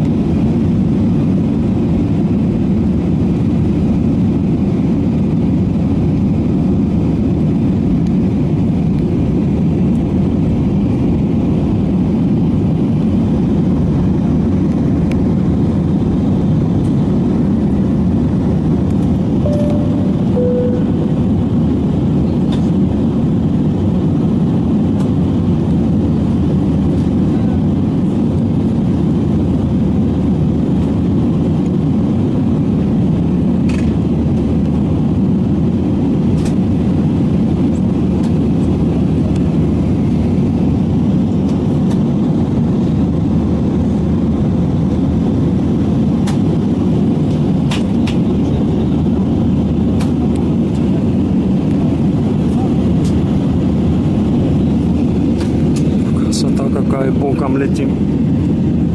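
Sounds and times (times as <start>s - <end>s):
jet engine cabin noise: 0.0s - 58.9s
two-note chime: 19.5s - 21.3s.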